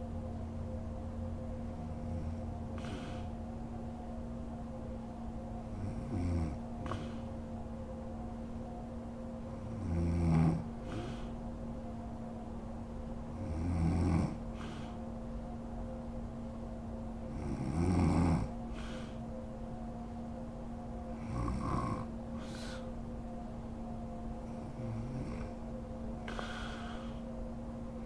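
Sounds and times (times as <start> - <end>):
woman snoring: 1.9 - 3.3, 5.7 - 7.3, 9.6 - 11.3, 13.4 - 14.9, 17.3 - 19.2, 21.2 - 22.8
faint breath: 2.0 - 3.5, 6.8 - 7.6, 10.6 - 11.6, 14.3 - 15.2, 18.4 - 19.4, 22.0 - 23.0, 26.2 - 27.4.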